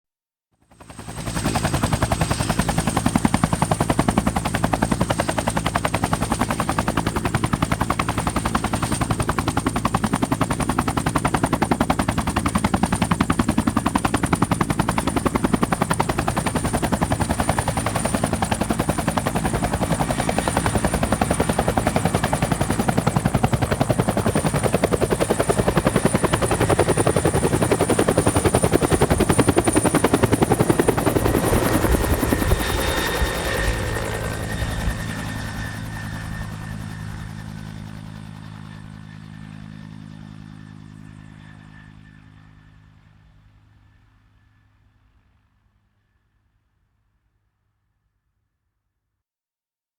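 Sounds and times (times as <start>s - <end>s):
helicopter turbine whine: 0.7s - 45.0s
helicopter rotor chop: 0.8s - 40.3s.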